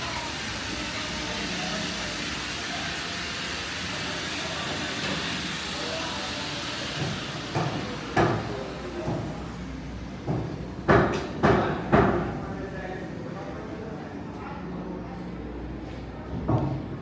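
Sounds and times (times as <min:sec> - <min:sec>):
steady background noise: 0:00.0 - 0:17.0
construction knocks and bangs: 0:07.0 - 0:09.4, 0:10.2 - 0:12.4.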